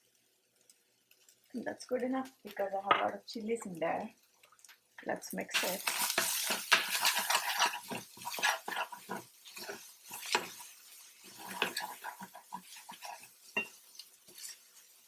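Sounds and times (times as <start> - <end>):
spoon scraping a cooking pan: 5.5 - 15.0.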